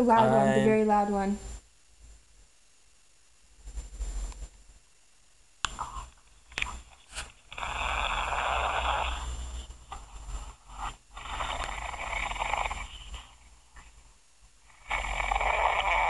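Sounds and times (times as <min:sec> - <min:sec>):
man snoring through phone speaker: 0:07.5 - 0:09.6, 0:11.1 - 0:13.4, 0:14.7 - 0:16.0.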